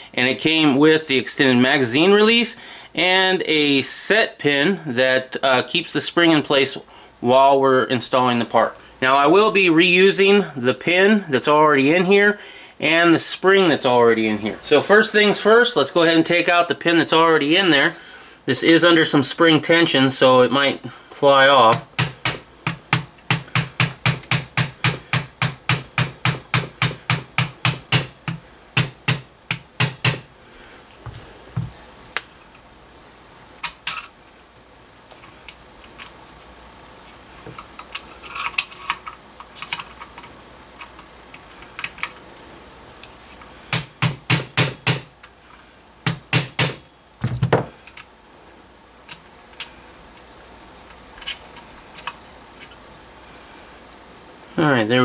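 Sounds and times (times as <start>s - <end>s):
hammer tapping punch on metal: 21.7s - 30.3s.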